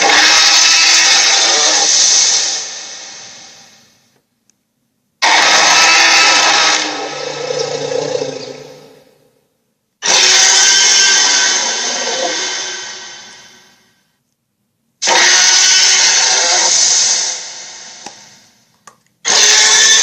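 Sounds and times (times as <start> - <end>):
toy dragon electronic roar: 0.0 - 3.4, 5.2 - 9.1, 10.0 - 13.8, 15.0 - 18.0, 19.3 - 20.0.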